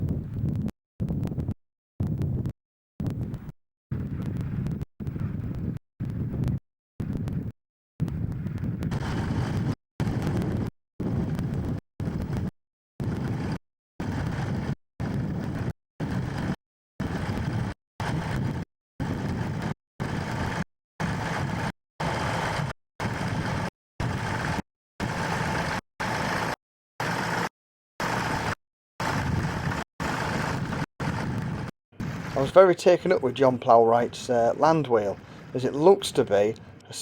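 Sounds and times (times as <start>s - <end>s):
tractor engine drone: 8.1s - 37.0s.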